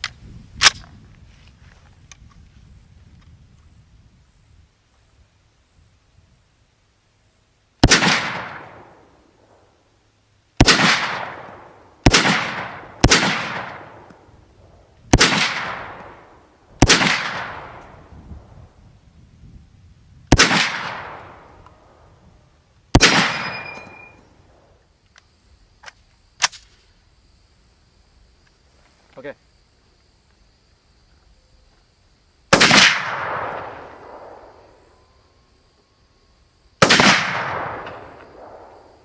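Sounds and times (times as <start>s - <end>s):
rifle shots echoing: 7.8s - 9.6s, 10.6s - 14.3s, 15.1s - 18.0s, 20.3s - 21.6s, 22.9s - 24.3s, 32.5s - 34.7s, 36.8s - 38.9s
short ringing ping of ejected clip: 23.4s - 24.2s.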